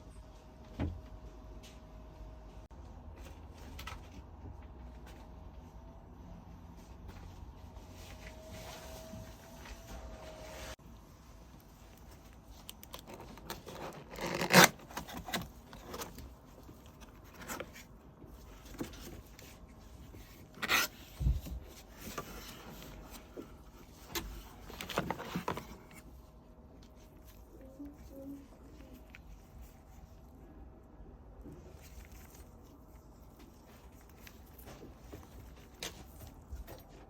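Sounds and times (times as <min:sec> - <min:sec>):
packaging scraping and tearing: 0:12.6 - 0:18.0.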